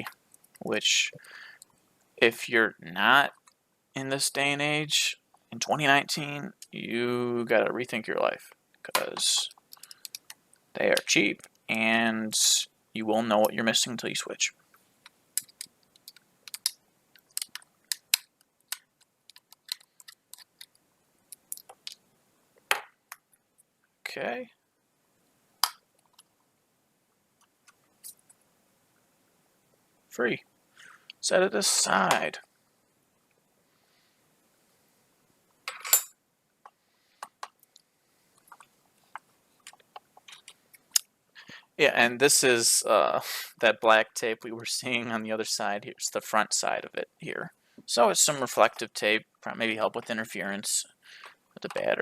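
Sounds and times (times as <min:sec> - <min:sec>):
screwdriver and tiny screws clicking: 0:15.4 - 0:22.0.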